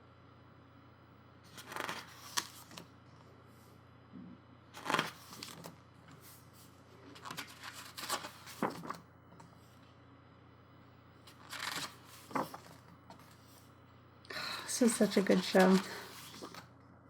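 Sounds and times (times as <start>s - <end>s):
book pages being turned: 1.5s - 2.9s, 4.8s - 9.0s, 11.3s - 13.6s, 14.8s - 16.7s.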